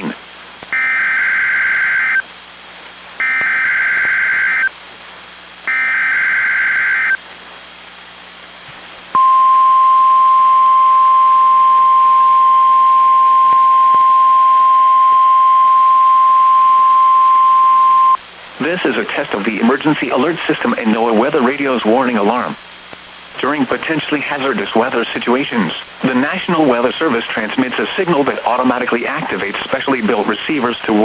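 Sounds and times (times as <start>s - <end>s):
steady warning alarm tone: 0.8s - 2.2s, 3.2s - 4.7s, 5.7s - 7.2s, 9.2s - 18.2s.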